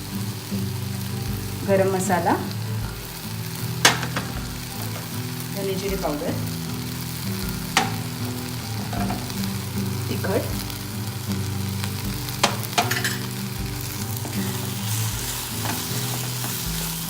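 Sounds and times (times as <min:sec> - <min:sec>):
gravy sizzling in oil: 0:00.0 - 0:17.0
spoon stirring in pan: 0:07.1 - 0:09.6, 0:11.8 - 0:17.0
spoon clinking against pan: 0:07.8 - 0:08.2, 0:12.4 - 0:13.3.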